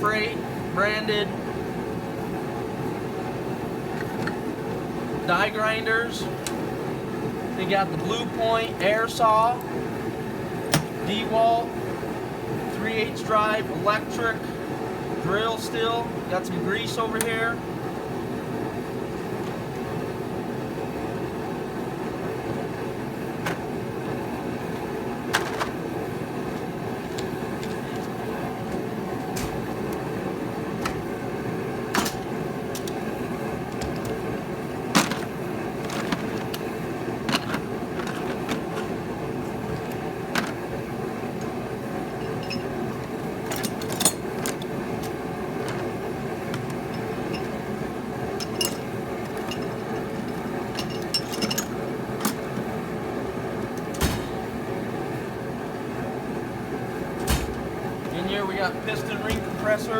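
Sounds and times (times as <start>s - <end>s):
mechanical hum: 0.0s - 59.9s
metal hand tools clinking: 42.2s - 42.8s, 48.4s - 52.4s.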